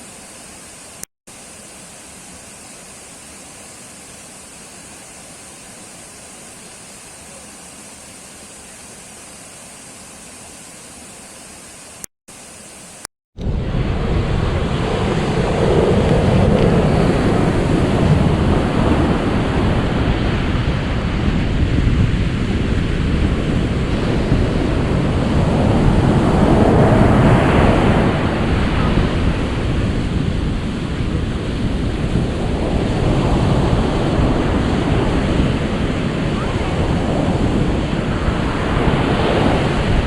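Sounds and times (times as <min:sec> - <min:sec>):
ocean surf rushing: 0:12.7 - 0:40.0.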